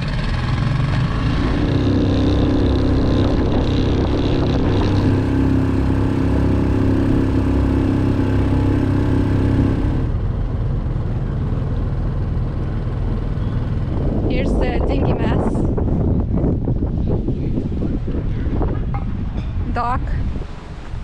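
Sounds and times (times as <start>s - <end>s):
low rumble: 0.0s - 11.5s
outboard motor running: 0.0s - 14.5s.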